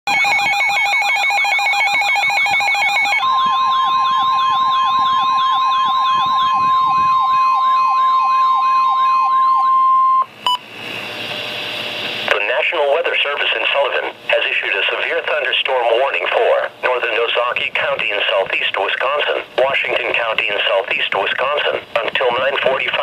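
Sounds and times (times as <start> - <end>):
electronic siren warble: 0.1 - 10.3
steady alarm tones: 0.1 - 10.7
long steady warning tone: 0.1 - 12.3
radio static hiss: 10.9 - 23.0.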